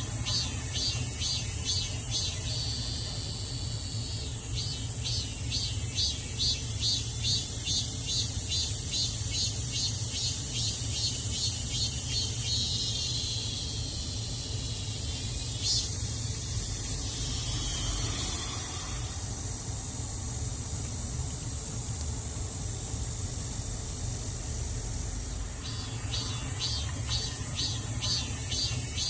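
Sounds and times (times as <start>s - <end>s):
cicadas buzzing: 0.0s - 29.0s.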